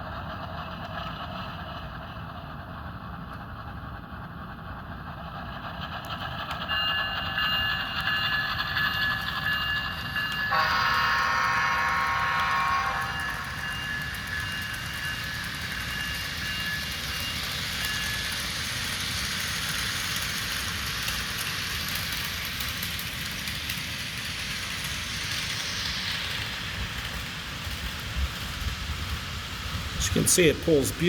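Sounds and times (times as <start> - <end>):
model train rolling on track: 0.0 - 31.0
model train horn blast: 10.5 - 13.5
recorded diesel engine sound: 10.5 - 31.0.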